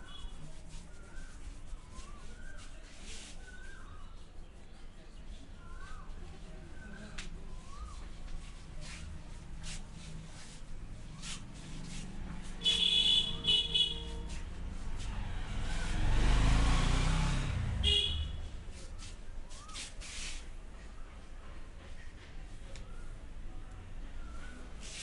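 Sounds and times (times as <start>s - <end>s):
vehicle passing: 8.8s - 19.8s
high-pitched vehicle horn beeps: 12.6s - 14.3s, 17.8s - 18.5s.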